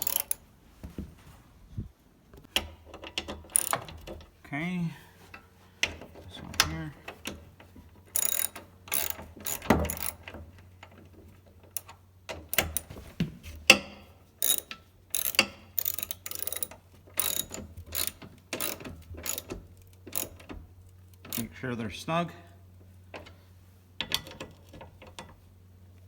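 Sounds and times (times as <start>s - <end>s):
hand ratchet clicking: 0.0s - 0.4s, 2.5s - 4.1s, 5.8s - 11.0s, 14.4s - 21.6s.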